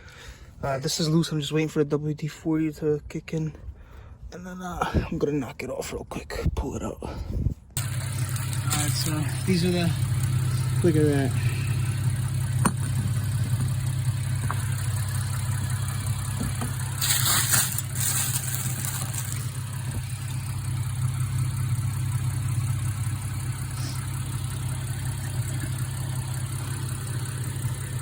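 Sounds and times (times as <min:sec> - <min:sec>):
car engine idling: 0:07.8 - 0:28.0.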